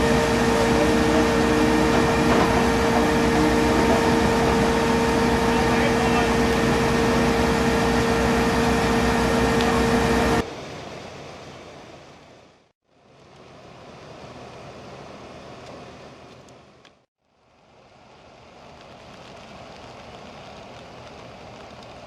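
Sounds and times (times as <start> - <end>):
machinery whining and rumbling: 0.0 - 10.4.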